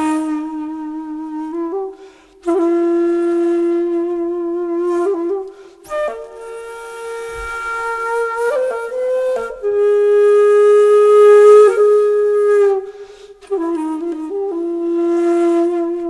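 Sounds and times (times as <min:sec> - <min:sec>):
solo flute long breathy notes: 0:00.0 - 0:15.9.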